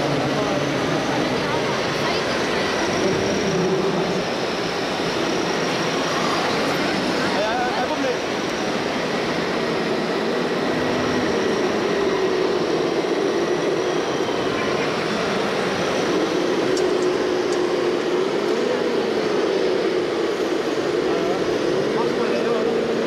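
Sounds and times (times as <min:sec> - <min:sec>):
busy hall crowd din: 0:00.0 - 0:08.8
model machine motor drone: 0:00.0 - 0:23.0.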